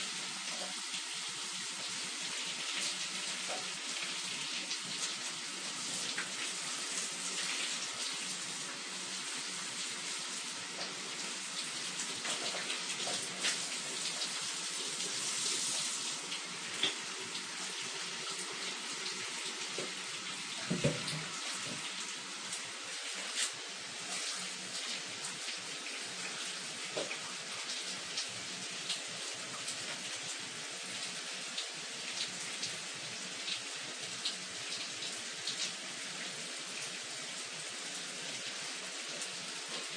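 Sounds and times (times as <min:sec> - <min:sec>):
shower water spraying: 0:00.0 - 0:39.9.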